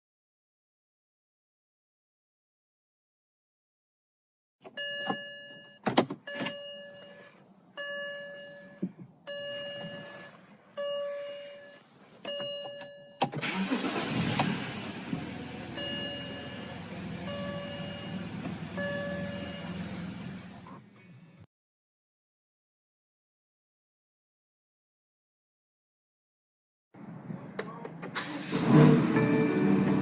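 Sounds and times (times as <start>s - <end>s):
car warning chime: 4.7s - 14.0s, 15.8s - 19.8s
car engine starting and idling: 13.2s - 20.9s, 27.0s - 30.0s.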